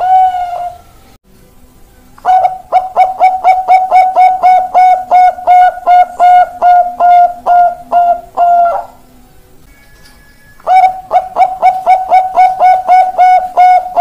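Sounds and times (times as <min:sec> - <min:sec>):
dove cooing: 0:00.0 - 0:01.0, 0:02.2 - 0:09.1, 0:10.6 - 0:14.0.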